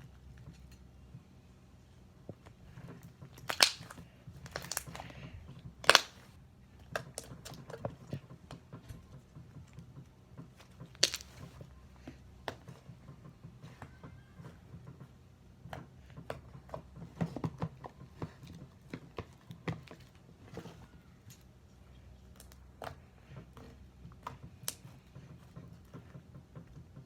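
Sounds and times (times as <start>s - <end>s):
slime squished by hand: 3.3s - 6.3s, 11.0s - 11.6s.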